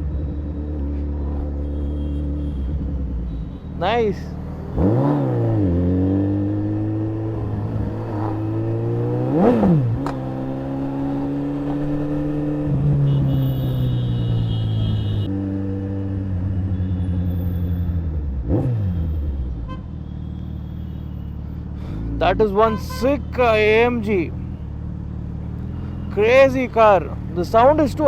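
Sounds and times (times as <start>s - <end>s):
engine revving: 4.0s - 16.1s, 17.6s - 19.5s.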